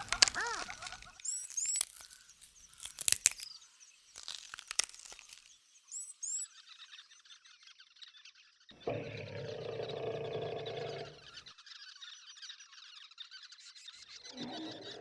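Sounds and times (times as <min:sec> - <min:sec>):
crackling rustle: 0:00.0 - 0:03.6, 0:04.2 - 0:05.6
sharp dry cracks: 0:01.3 - 0:03.5
birds chirping: 0:08.8 - 0:11.6.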